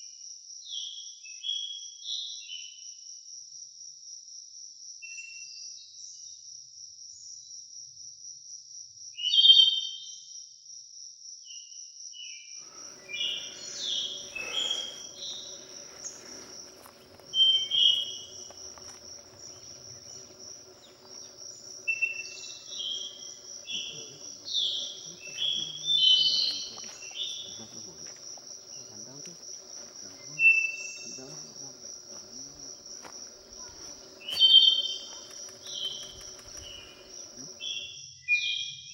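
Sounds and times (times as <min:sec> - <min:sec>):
insect trill: 0:12.6 - 0:38.0
birds calling: 0:12.7 - 0:37.9
faint low hum: 0:12.7 - 0:37.9.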